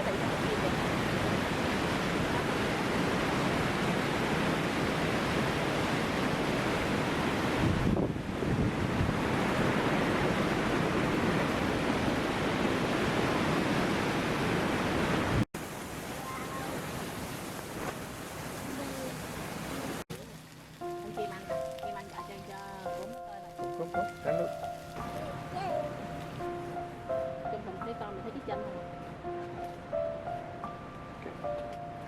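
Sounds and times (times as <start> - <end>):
strong wind on microphone: 0.7 - 15.4.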